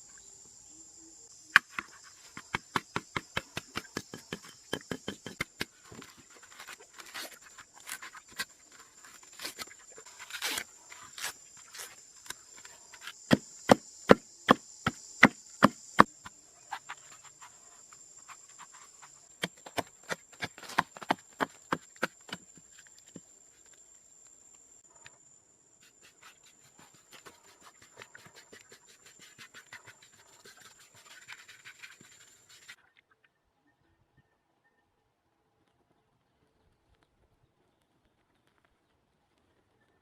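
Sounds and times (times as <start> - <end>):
chopping strikes on wood: 1.5 - 5.7, 13.3 - 16.1, 19.4 - 22.4.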